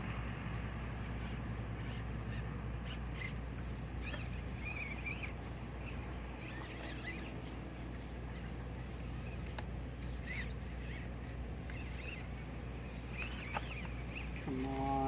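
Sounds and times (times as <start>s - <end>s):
small electric motor whining: 0.0s - 15.0s
steady low hum: 0.0s - 15.0s.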